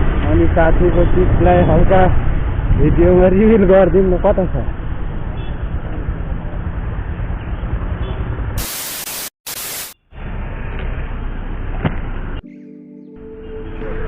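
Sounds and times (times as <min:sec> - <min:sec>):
loud static hiss: 0:08.6 - 0:10.0.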